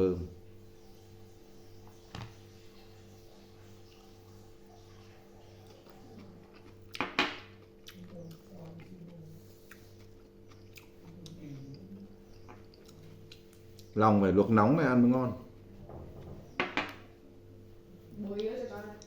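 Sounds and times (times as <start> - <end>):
steady low hum: 0.0 - 19.0
person chewing food: 3.7 - 14.0.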